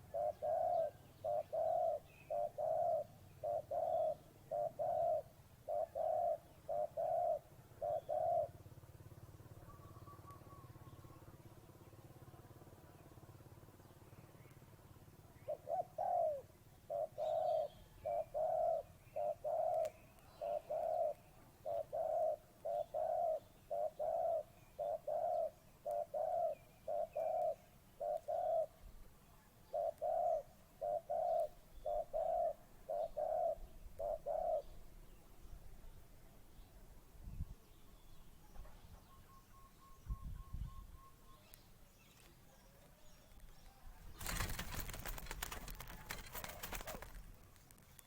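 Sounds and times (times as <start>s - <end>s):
dove cooing: 0.0s - 11.4s, 15.4s - 29.0s, 29.6s - 34.8s, 44.1s - 47.4s.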